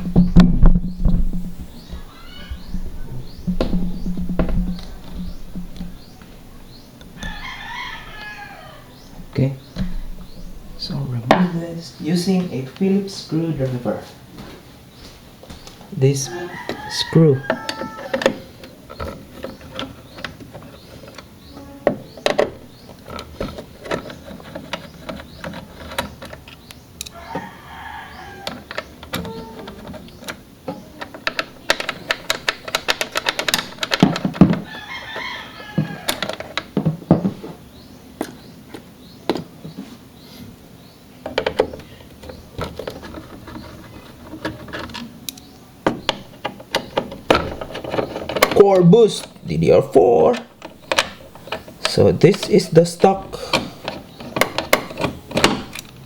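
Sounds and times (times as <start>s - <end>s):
wavering calls: 1.6s - 12.2s
plastic parts being handled: 16.5s - 27.4s, 28.3s - 37.6s, 41.2s - 56.0s.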